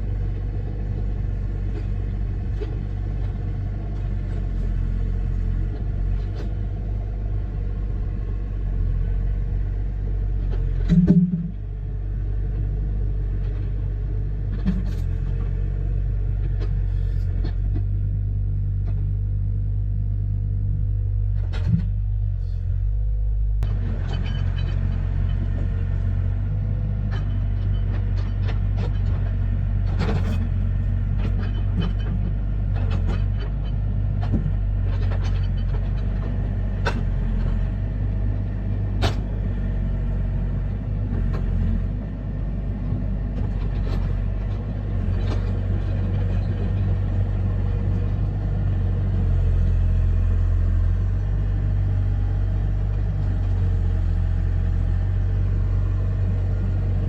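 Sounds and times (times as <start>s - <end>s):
low rumble: 0.0s - 57.0s
sharp knocks and clicks: 10.5s - 11.6s.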